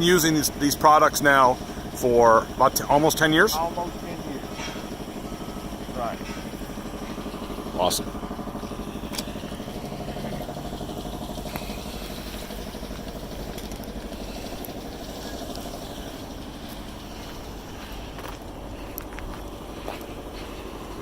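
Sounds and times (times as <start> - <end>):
engine idling: 0.0 - 21.0.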